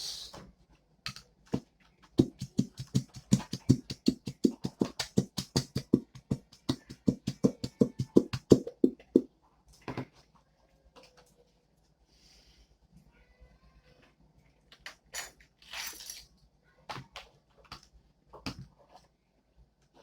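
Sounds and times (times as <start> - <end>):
mixing tool knocking on container: 2.2 - 9.3.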